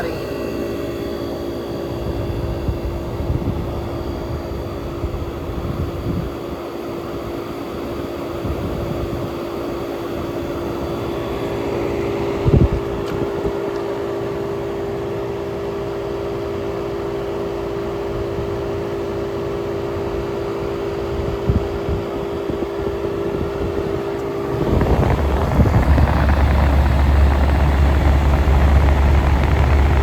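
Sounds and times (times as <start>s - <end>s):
compressor hum: 0.0s - 6.4s, 22.8s - 30.0s
fan rushing: 23.3s - 30.0s.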